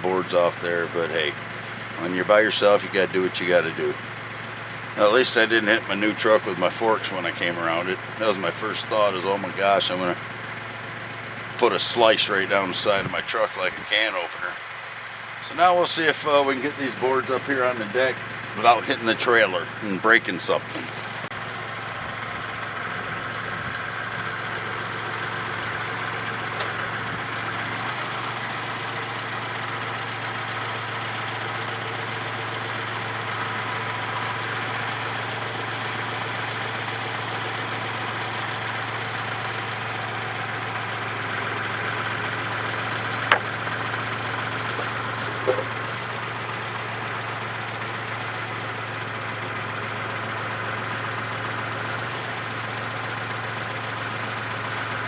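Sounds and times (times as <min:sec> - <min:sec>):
forklift engine running: 0:00.0 - 0:55.0
sharp clunks: 0:25.6 - 0:28.2, 0:42.4 - 0:45.9.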